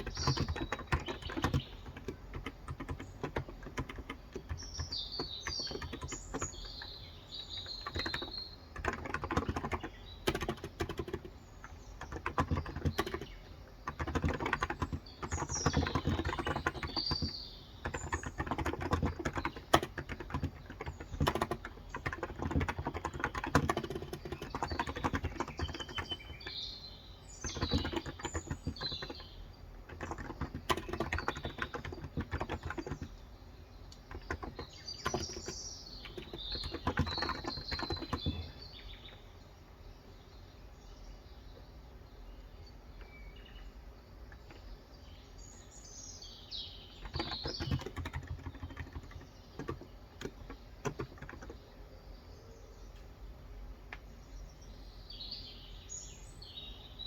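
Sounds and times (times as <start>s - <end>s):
fast keyboard typing: 0.0s - 26.7s, 27.4s - 38.8s, 44.3s - 44.6s, 46.9s - 51.7s
birds chirping: 0.0s - 57.0s.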